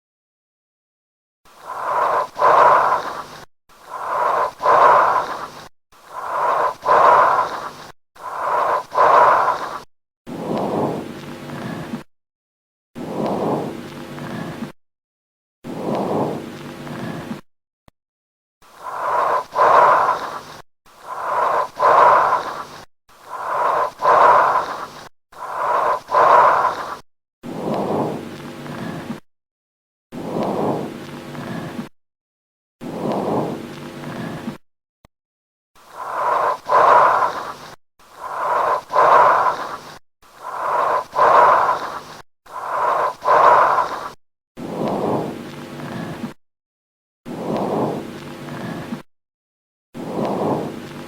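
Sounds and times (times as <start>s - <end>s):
breathing through a stethoscope: 1.5s - 12.0s, 18.6s - 28.2s, 35.8s - 44.2s.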